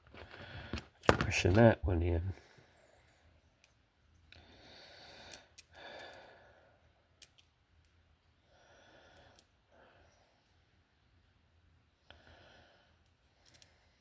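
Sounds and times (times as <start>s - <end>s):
faint breaths: 0.2s - 1.0s, 2.3s - 3.5s, 4.3s - 7.2s, 8.4s - 10.8s, 12.0s - 14.0s
small parts clicking: 5.2s - 6.3s, 7.1s - 8.0s, 9.1s - 9.6s, 13.0s - 13.8s.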